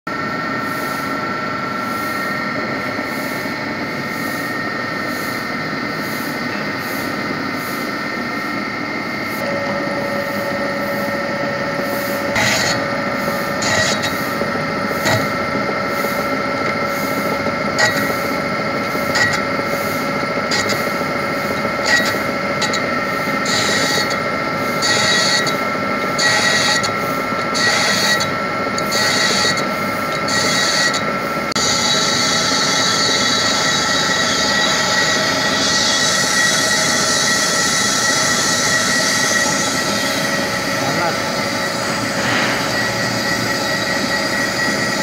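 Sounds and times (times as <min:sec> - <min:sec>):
metal lathe running: 0:00.1 - 0:45.0
lower tone: 0:08.6 - 0:13.6.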